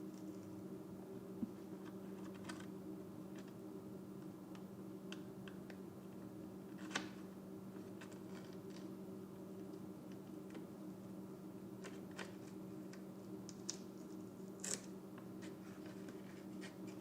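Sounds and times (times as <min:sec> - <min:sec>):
steady low hum: 0:00.0 - 0:17.0
decal peeling clicks and crinkles: 0:01.8 - 0:02.7, 0:11.8 - 0:17.0.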